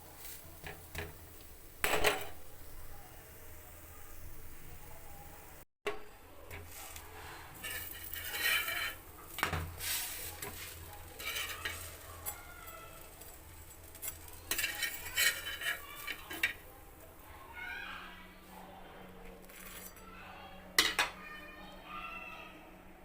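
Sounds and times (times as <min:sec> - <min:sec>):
food sizzling: 0:00.0 - 0:05.7, 0:06.4 - 0:16.7
metal utensil scraping a pan: 0:06.5 - 0:16.6.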